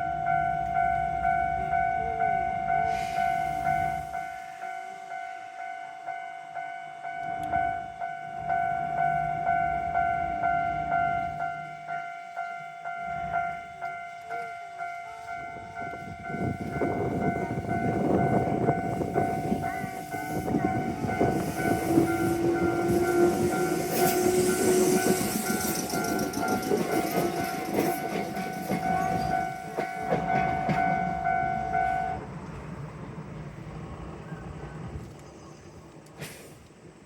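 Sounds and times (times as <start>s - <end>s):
railroad crossing bell ringing: 0.0s - 32.3s
train wheels clattering on rails: 15.6s - 32.8s.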